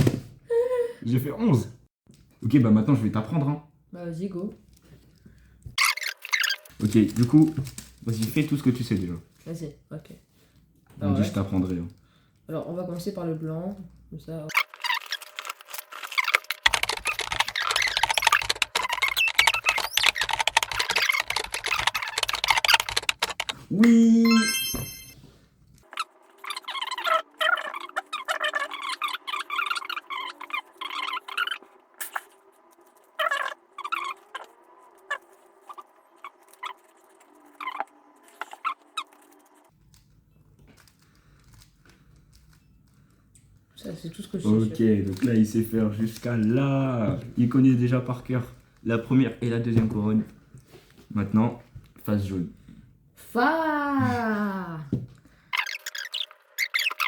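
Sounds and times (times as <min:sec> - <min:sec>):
puzzle cube layers clicking: 0:14.9 - 0:25.1.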